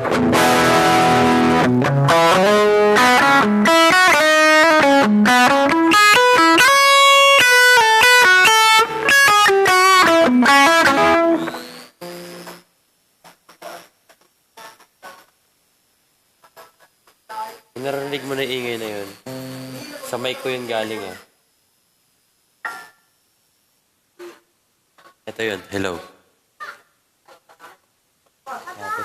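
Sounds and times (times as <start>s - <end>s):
electric guitar melody: 0.0s - 12.6s, 19.3s - 20.0s
faint high microphone whine: 0.0s - 29.0s.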